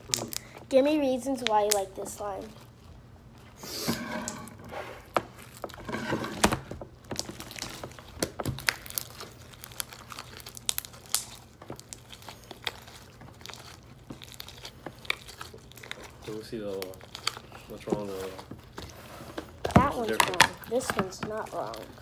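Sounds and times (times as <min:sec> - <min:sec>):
slime squished by hand: 0:06.9 - 0:18.8.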